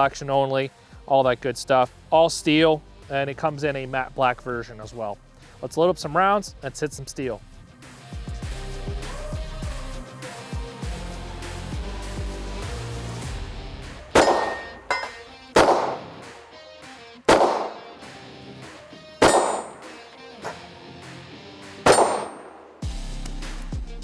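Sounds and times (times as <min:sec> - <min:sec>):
background music: 0:00.0 - 0:24.0
steel target ringing: 0:14.2 - 0:16.2, 0:19.2 - 0:20.6, 0:21.9 - 0:22.6
revolver shots: 0:14.2 - 0:16.4, 0:17.3 - 0:18.2, 0:19.2 - 0:20.7, 0:21.8 - 0:23.4.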